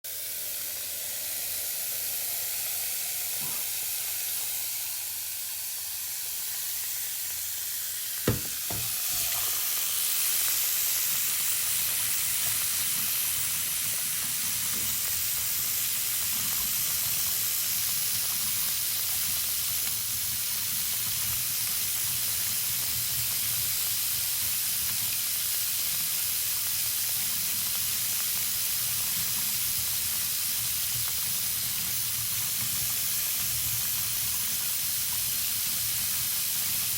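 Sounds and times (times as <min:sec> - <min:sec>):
running water: 0:08.2 - 0:17.4.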